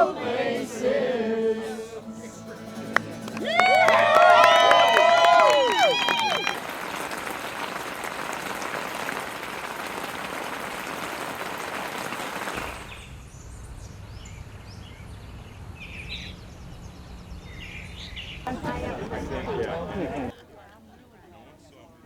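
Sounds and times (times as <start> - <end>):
crowd applauding: 2.7 - 13.0, 18.5 - 20.8.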